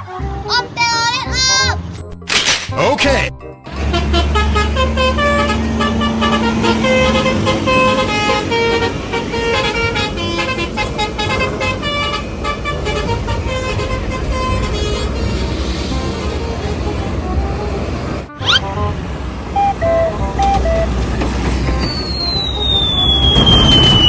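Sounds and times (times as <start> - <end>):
multi-tone air horn tune: 3.7 - 23.9
low engine hum: 3.7 - 24.0.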